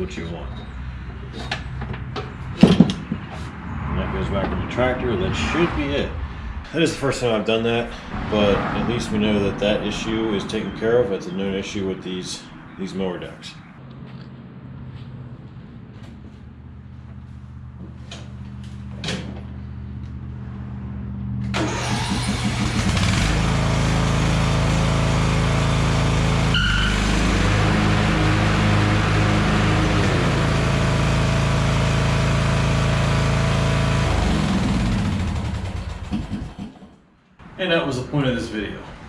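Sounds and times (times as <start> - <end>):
riding mower engine running: 15.9 - 36.5
spinning mower blades rushing: 21.6 - 36.8.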